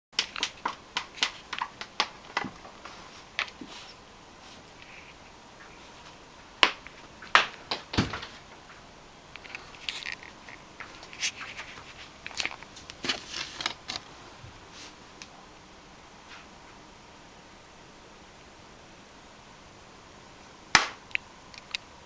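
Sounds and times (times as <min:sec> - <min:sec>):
sharp taps and knocks: 0:00.2 - 0:03.7
scratchy rustling: 0:00.2 - 0:06.2, 0:09.4 - 0:15.0.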